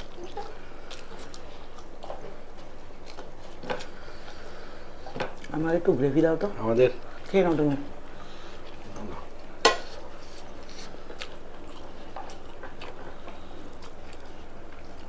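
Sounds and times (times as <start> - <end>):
utensil clinking against dish: 8.9 - 10.0
dishes clicking and tapping: 9.6 - 10.0.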